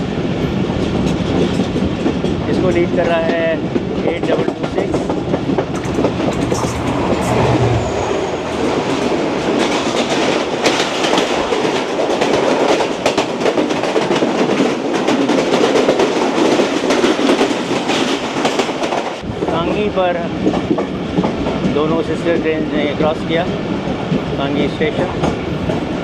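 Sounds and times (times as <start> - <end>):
wheels clicking over rail joints: 0.8 - 7.9
trains rushing past: 3.3 - 11.8
locomotive engine hum: 5.2 - 9.4.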